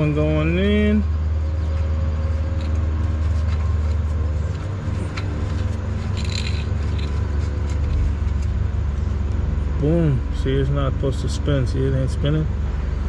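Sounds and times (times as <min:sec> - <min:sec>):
steady low rumble: 0:00.0 - 0:13.0
faint metallic clicks and scrapes: 0:01.6 - 0:08.6.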